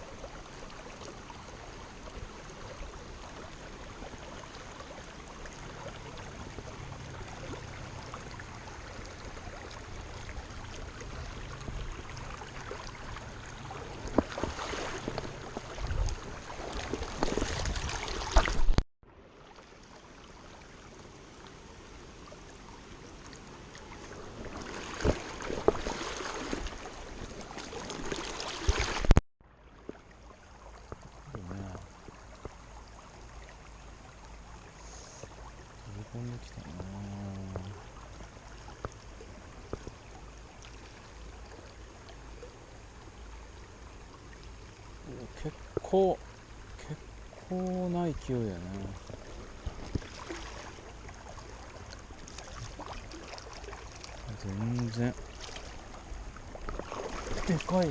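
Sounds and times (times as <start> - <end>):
river water rushing: 0.0 - 18.7, 19.3 - 29.1, 37.4 - 57.9
splashing and knocking: 14.1 - 18.8, 24.4 - 26.8, 27.6 - 29.2, 56.6 - 57.9.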